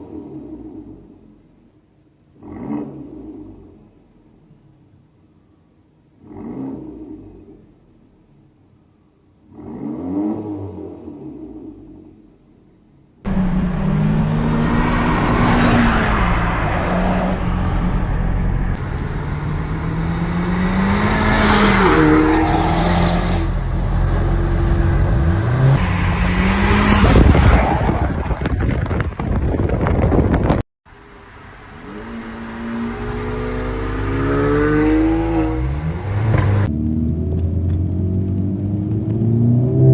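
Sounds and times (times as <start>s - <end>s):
car engine revving: 13.3s - 29.0s, 31.7s - 39.9s.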